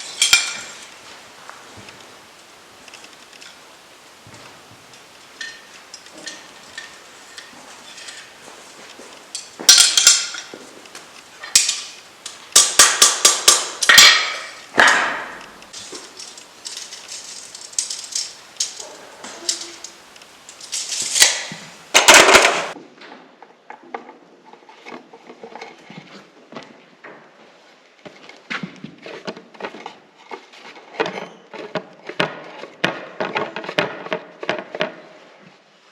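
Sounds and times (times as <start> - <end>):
faint metal clinks and knocks: 0.0 - 22.6.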